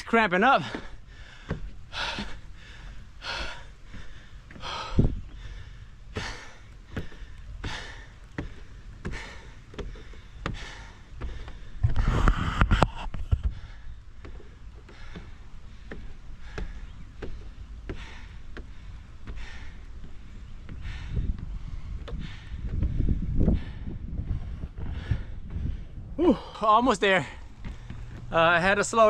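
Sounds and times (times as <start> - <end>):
footsteps on wooden steps: 0.0 - 29.0
man panting: 0.6 - 12.5, 13.4 - 28.2.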